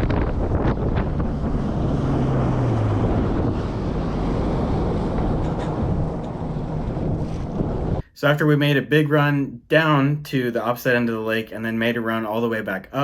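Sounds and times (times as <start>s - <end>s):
outboard motor rumble: 0.0s - 8.0s
wind buffeting microphone: 0.0s - 8.0s.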